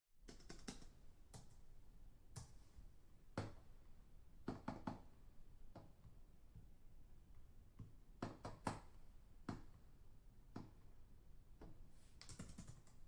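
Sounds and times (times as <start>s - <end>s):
distant keyboard typing: 0.3s - 0.9s, 12.2s - 13.0s.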